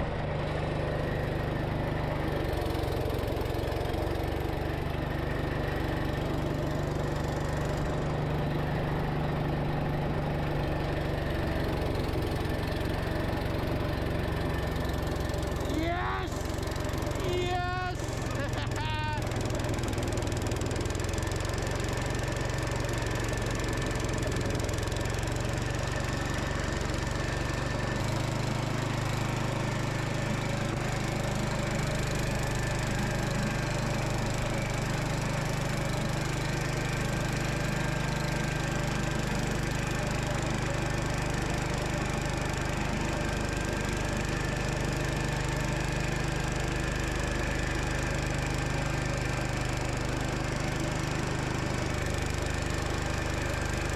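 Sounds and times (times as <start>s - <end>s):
walk-behind tractor engine running: 0.0s - 53.9s.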